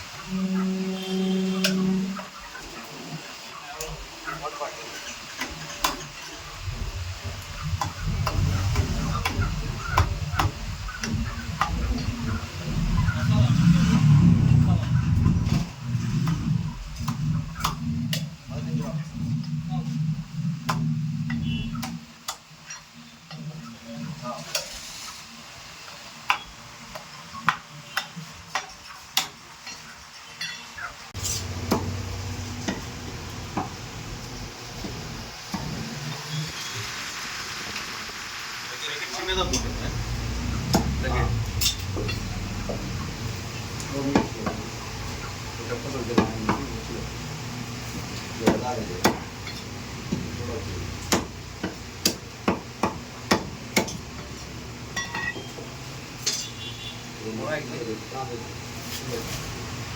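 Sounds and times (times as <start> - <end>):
low hum: 6.4 - 21.8, 39.3 - 45.9
kitchen utensils clinking: 54.9 - 55.6, 56.2 - 56.6.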